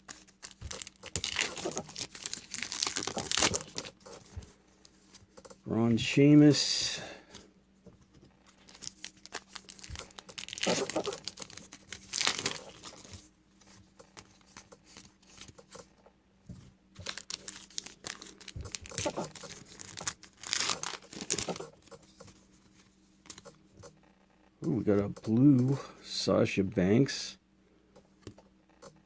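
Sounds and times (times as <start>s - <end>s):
wrapper tearing and crinkling: 0.1s - 4.0s, 8.6s - 13.1s, 17.0s - 21.9s.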